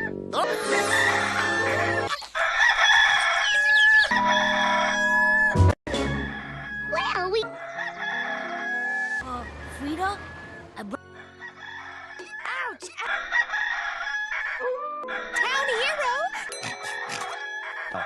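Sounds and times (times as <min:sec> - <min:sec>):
rooster crowing: 0:00.7 - 0:12.5, 0:13.1 - 0:18.0
background music: 0:04.1 - 0:12.6.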